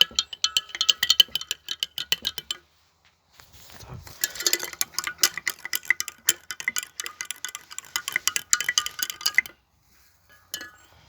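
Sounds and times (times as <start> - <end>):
spoon clinking in container: 0.0 - 2.6, 4.1 - 9.6, 10.3 - 11.0.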